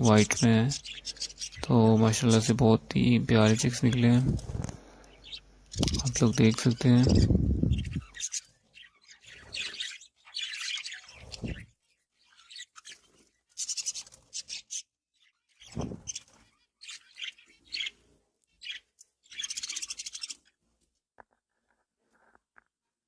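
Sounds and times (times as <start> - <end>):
budgerigars chattering: 0.0 - 4.2, 5.1 - 14.8, 15.6 - 18.0, 18.6 - 20.5.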